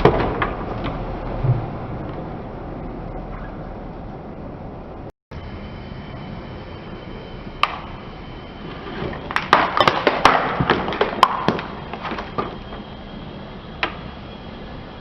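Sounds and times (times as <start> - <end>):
low rumble: 0.0 - 9.3.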